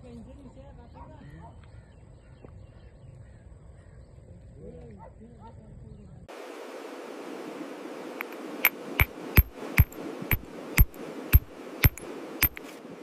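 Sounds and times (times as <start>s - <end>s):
stone knocks with high ring: 8.2s - 12.6s.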